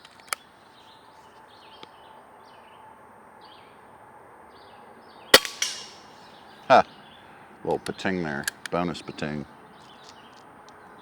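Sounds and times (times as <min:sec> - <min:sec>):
outdoor background noise: 0:00.0 - 0:11.0
small birds chirping: 0:04.6 - 0:11.0
sharp click: 0:05.4 - 0:06.0.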